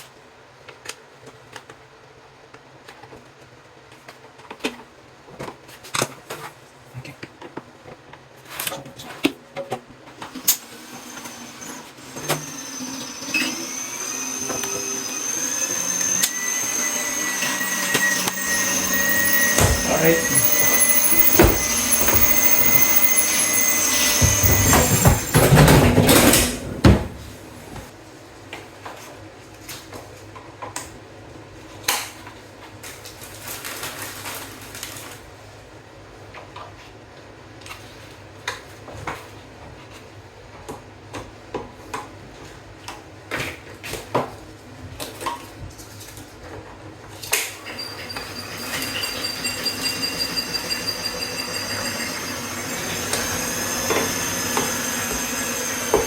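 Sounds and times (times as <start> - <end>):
cabinet hardware knocks and clinks: 18.4 - 27.8.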